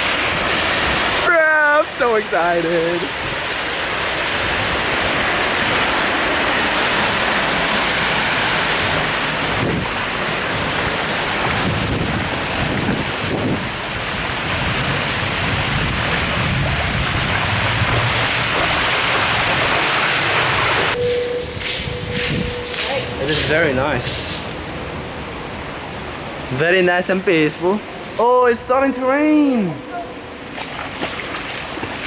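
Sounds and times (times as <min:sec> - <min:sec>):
rush of fast-flowing water: 0:00.0 - 0:21.0.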